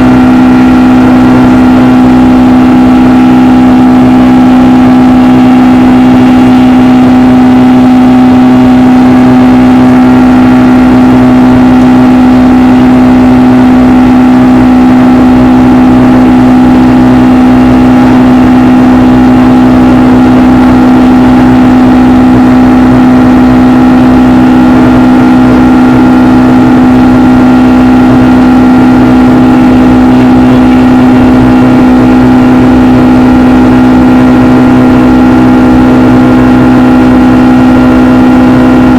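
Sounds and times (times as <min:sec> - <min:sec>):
jet engine cabin drone: 0:00.0 - 0:38.9.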